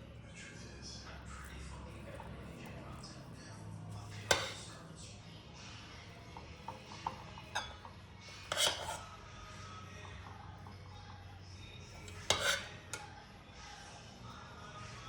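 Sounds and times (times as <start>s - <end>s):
dishes and utensils clinking: 3.9s - 4.8s, 6.2s - 9.2s, 11.8s - 13.2s.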